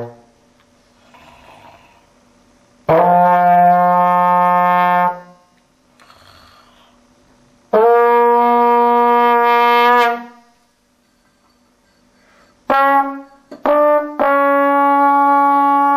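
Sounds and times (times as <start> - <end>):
trombone playing: 2.9 - 5.4, 7.7 - 10.5, 12.7 - 15.9.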